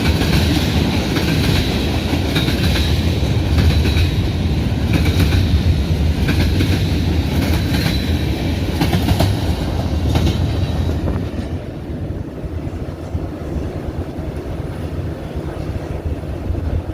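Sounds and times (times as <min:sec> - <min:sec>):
train wheels clicking over rail joints: 0:00.0 - 0:11.8.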